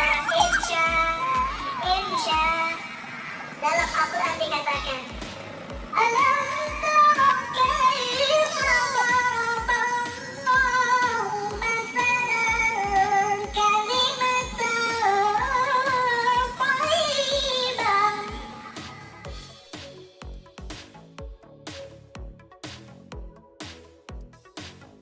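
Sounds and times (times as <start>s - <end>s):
low steady beat: 0.0s - 2.9s, 4.7s - 6.0s, 18.3s - 25.0s
woman singing: 0.0s - 2.9s, 5.9s - 19.2s.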